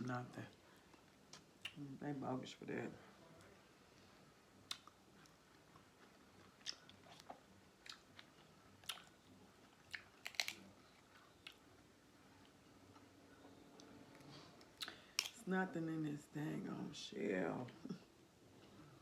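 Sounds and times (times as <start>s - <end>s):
chewing: 4.6s - 11.6s
crab shells cracking: 9.9s - 10.7s, 14.8s - 15.4s.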